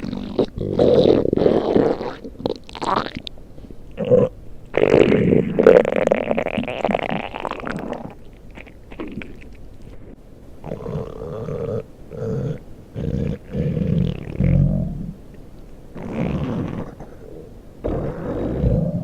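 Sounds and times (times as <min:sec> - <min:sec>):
stomach growling: 0:00.0 - 0:03.3, 0:04.0 - 0:15.3, 0:15.9 - 0:19.0.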